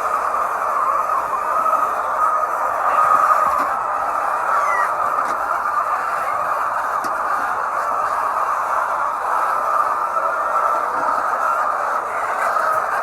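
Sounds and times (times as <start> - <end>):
flock of hens: 0.0 - 13.0.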